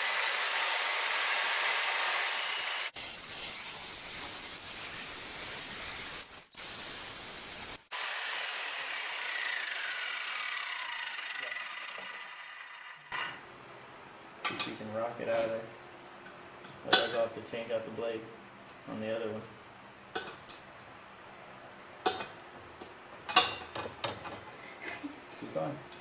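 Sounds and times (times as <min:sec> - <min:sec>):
power saw cutting metal pipe: 0:00.0 - 0:06.5, 0:07.4 - 0:13.4
saw whine winding down: 0:07.9 - 0:13.2.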